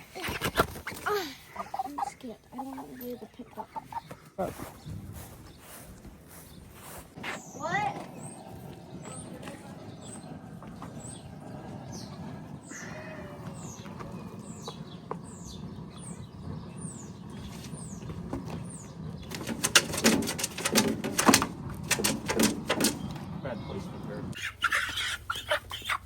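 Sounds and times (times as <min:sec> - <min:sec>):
chicken wings flapping: 0:00.0 - 0:01.2, 0:17.3 - 0:23.2.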